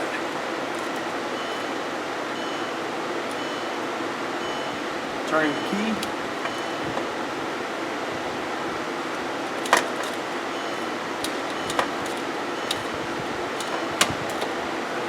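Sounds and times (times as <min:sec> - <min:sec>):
ignition key clicks: 0:03.2 - 0:03.7, 0:09.5 - 0:14.6.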